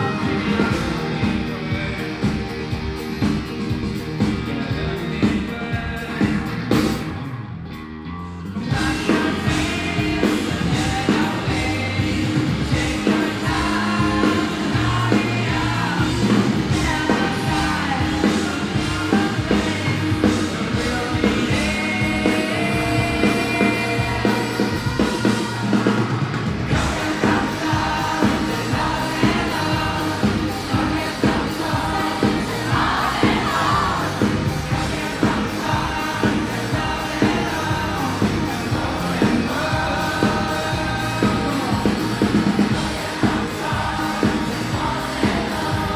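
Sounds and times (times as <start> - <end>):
lead singer singing: 0.0 - 3.4, 4.2 - 7.0, 8.6 - 45.9
live rock band playing: 0.0 - 45.9.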